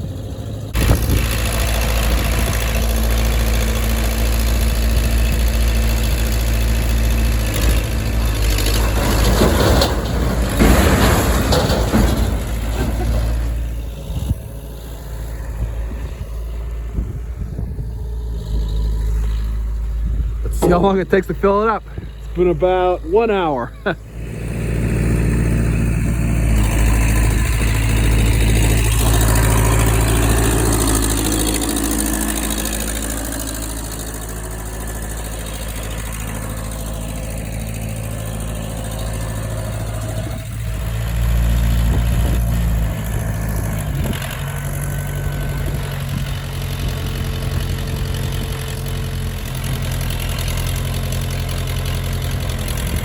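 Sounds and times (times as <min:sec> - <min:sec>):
heavy equipment engine running: 0:00.0 - 0:53.0.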